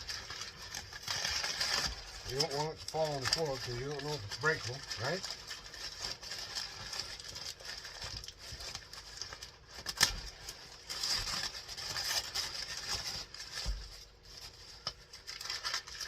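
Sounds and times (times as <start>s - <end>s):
packaging rustling: 0.0s - 16.0s.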